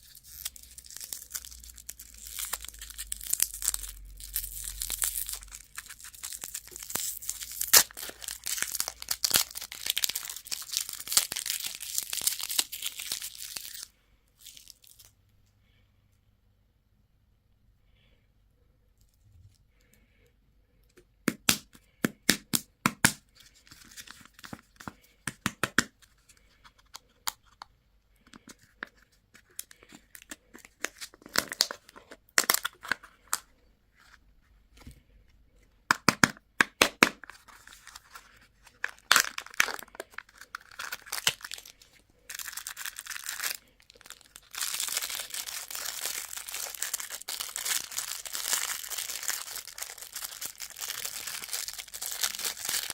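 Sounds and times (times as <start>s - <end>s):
plastic wrappers crackling: 0.0s - 15.1s, 37.2s - 52.9s.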